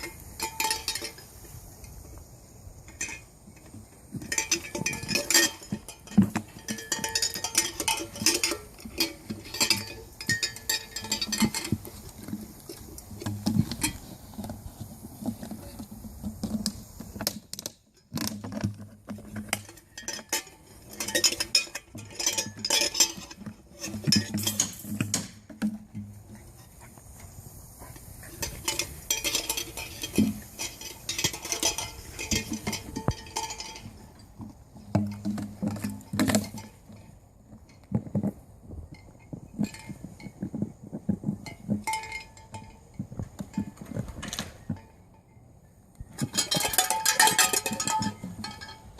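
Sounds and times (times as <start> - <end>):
clicking and clinking: 27.8 - 34.3.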